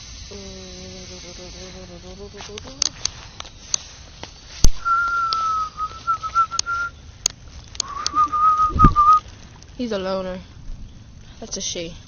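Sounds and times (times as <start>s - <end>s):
person whistling: 4.8s - 6.9s, 7.8s - 9.2s
sharp clicks: 5.0s - 9.0s.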